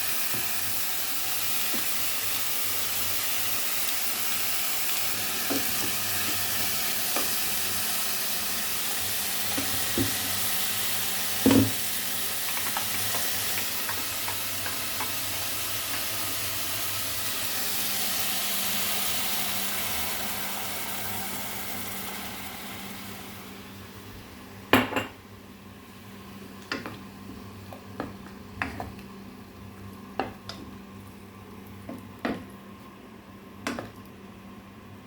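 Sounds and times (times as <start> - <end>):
food sizzling in a frying pan: 0.0 - 24.0.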